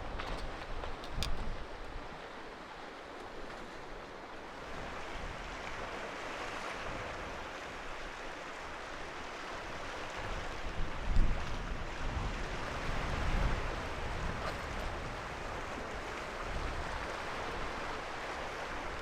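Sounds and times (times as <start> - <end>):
wind buffeting microphone: 0.0 - 2.1, 9.6 - 19.0.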